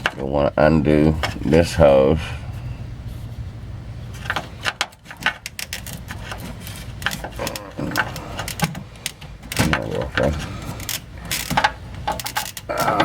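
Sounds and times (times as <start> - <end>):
hands working hose loose: 4.2 - 13.0.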